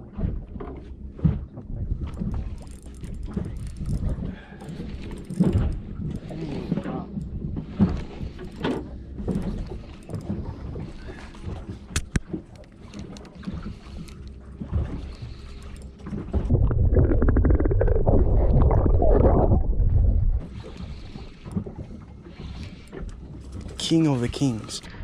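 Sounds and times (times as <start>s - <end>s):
loud low rumbling rush: 16.4s - 20.5s.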